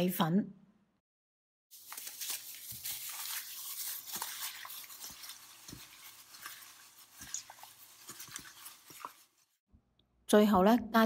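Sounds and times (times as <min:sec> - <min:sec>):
wet squishing and stirring: 0:01.7 - 0:09.7.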